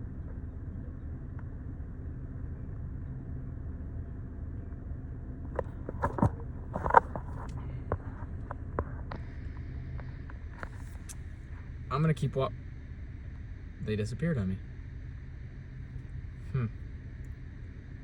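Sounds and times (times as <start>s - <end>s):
low rumble inside vehicle cab: 0.0s - 18.0s
clicks and rustles: 5.6s - 9.3s.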